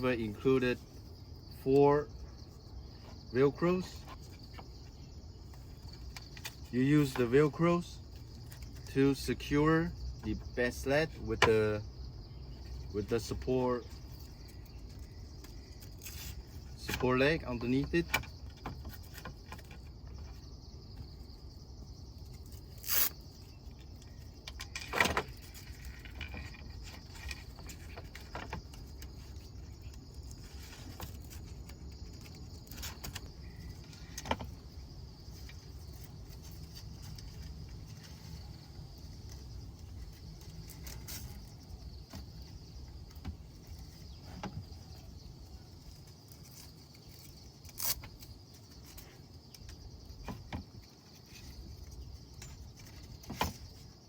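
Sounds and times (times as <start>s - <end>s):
velcro straps fastening: 22.8s - 23.2s.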